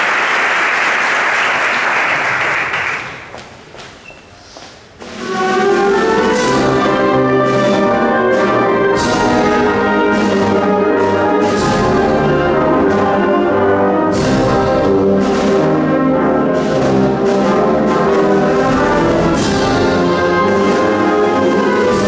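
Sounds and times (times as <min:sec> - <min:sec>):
wind band playing a march: 0:05.1 - 0:22.0.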